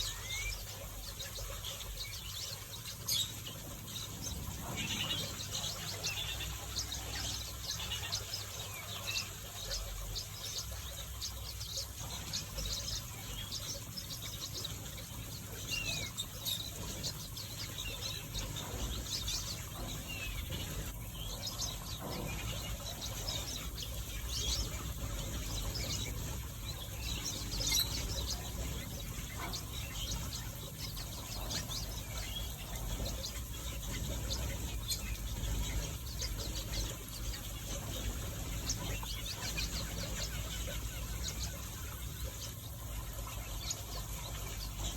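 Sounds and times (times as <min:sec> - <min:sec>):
finches chirping and twittering: 0:00.0 - 0:44.9.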